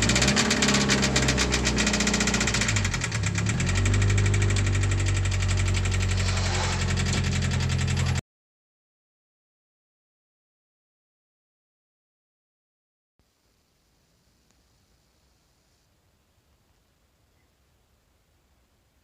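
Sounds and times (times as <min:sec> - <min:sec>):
engine running with rod knock: 0:00.0 - 0:08.2.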